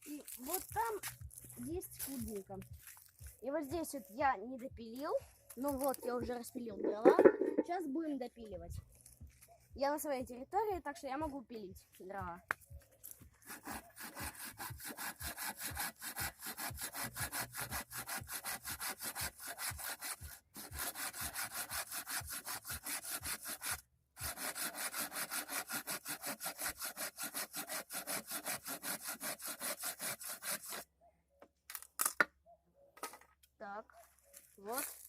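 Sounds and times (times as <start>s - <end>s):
hand saw cutting wood: 13.4s - 30.8s.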